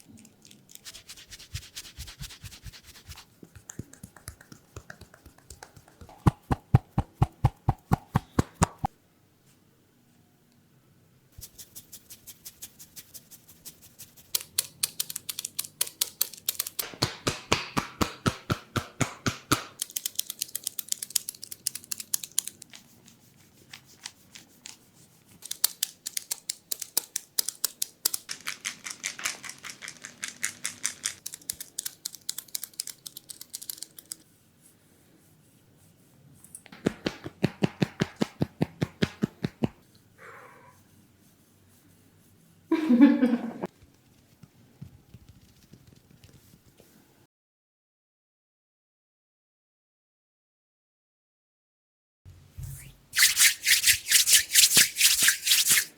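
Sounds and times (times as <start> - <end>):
hands tapping a head: 3.1 - 8.9, 16.8 - 19.8, 36.7 - 39.8.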